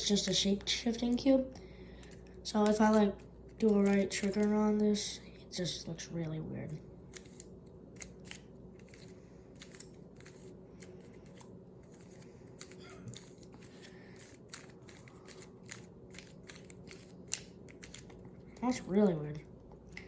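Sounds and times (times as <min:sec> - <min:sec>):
puzzle cube plastic clicks: 0:07.1 - 0:18.2.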